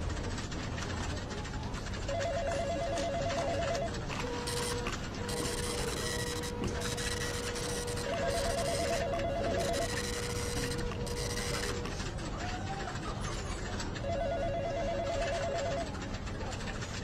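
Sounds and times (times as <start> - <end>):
printer clattering: 0.0 - 17.0
telephone ringing with warbling trill: 2.1 - 11.8, 14.0 - 15.9.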